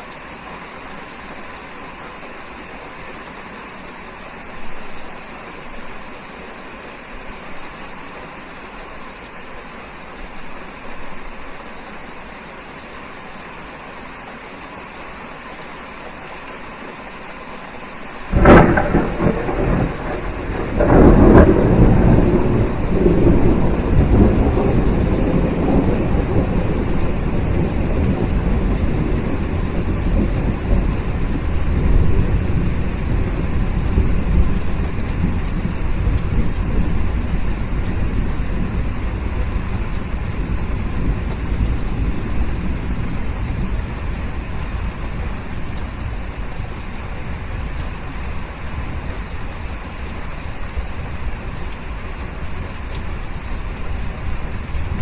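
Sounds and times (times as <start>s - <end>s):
heavy rain: 0.0s - 55.0s
thunder rumbling: 18.3s - 46.0s.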